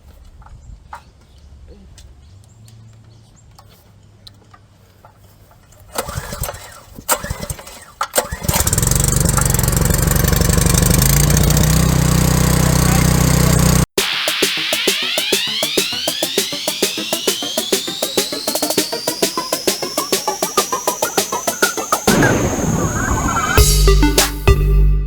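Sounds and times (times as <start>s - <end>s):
pressure washer engine running: 8.3s - 23.7s.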